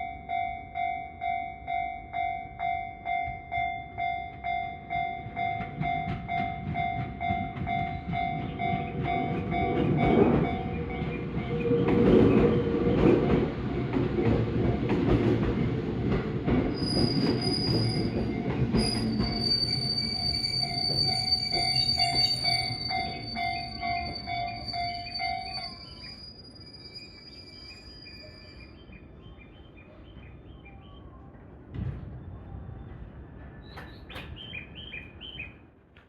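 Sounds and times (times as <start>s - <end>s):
level-crossing alarm bell ringing: 0.0s - 11.4s, 17.2s - 28.7s
train wheels rumbling: 3.1s - 35.5s
wheels squealing on rail: 16.7s - 29.0s.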